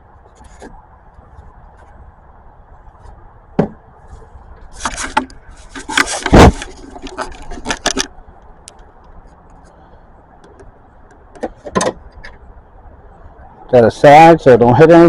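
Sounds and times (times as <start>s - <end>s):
knocking and scraping: 3.6s - 8.2s.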